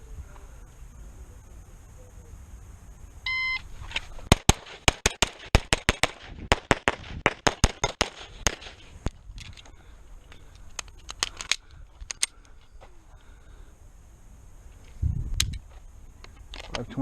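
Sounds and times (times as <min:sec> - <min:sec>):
pistol firing rapidly: 0:04.3 - 0:08.7.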